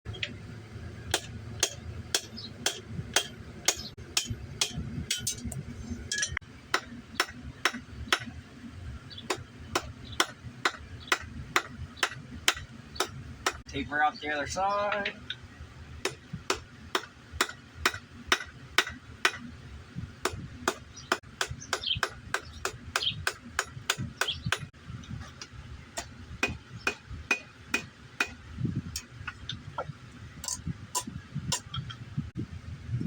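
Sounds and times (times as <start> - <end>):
anvil ringing: 1.1 - 5.5, 6.1 - 8.3
hammer striking steel on anvil: 1.1 - 8.4, 9.3 - 13.6, 16.0 - 19.5, 20.2 - 24.7, 26.0 - 28.4.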